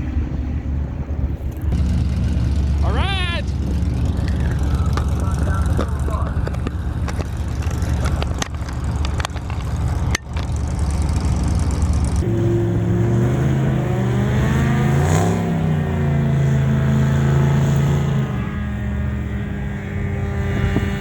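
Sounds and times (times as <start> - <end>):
car engine rumble: 0.0 - 21.0
engine drone: 0.0 - 21.0.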